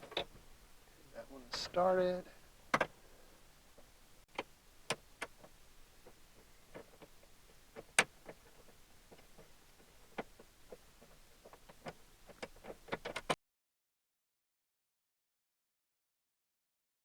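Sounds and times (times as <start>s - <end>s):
hardware clicks and taps: 2.7s - 3.0s, 3.7s - 13.4s.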